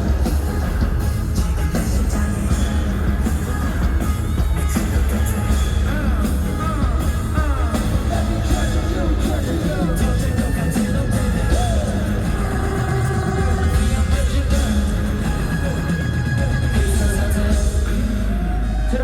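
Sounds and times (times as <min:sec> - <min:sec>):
group vocals over pop backing track: 0:00.0 - 0:19.0
heavy bass: 0:00.0 - 0:19.0.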